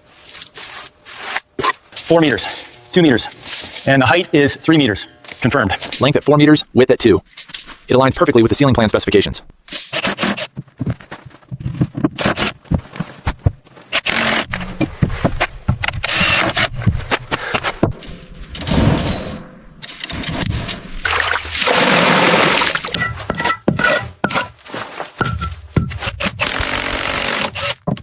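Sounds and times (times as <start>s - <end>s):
scraping and rustling: 0.0s - 4.0s, 22.6s - 26.2s
knocks and clicks: 10.8s - 21.9s, 25.2s - 28.0s.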